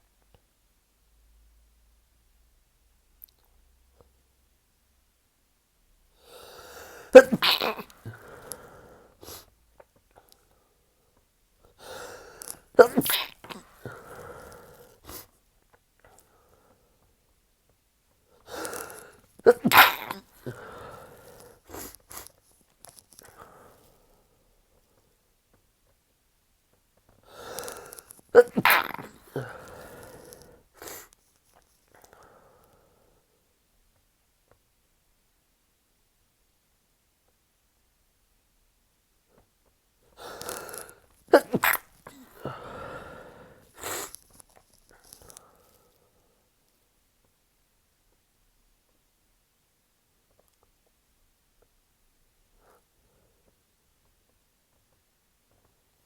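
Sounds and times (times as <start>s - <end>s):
quiet breathing: 6.0s - 7.2s, 7.8s - 12.8s, 13.4s - 17.3s, 18.1s - 19.4s, 20.2s - 25.4s, 27.0s - 28.3s, 29.1s - 33.6s, 42.0s - 46.8s, 52.5s - 53.8s
breathy noise: 6.2s - 9.5s, 11.7s - 15.3s, 18.4s - 22.3s, 27.2s - 31.2s, 40.1s - 46.3s
person drawing in breath: 6.2s - 9.5s, 40.2s - 46.2s
person sniffing: 6.2s - 9.5s, 11.8s - 15.4s, 18.4s - 22.4s, 27.3s - 31.2s, 40.2s - 46.2s
person sneezing loudly: 6.7s - 8.5s, 11.8s - 15.3s, 18.5s - 22.3s, 27.4s - 30.2s, 40.2s - 43.1s, 43.8s - 44.2s.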